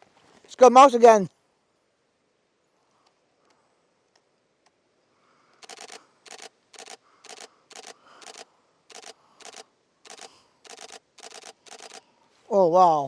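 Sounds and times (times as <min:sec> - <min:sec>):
camera shutter bursts: 0:05.6 - 0:12.1.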